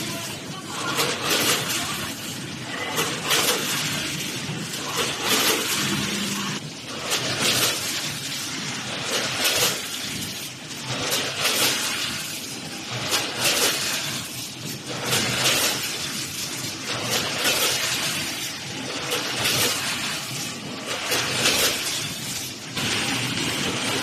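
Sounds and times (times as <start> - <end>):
packaging machine clattering: 0.0 - 24.0
steady machine din: 0.0 - 24.0.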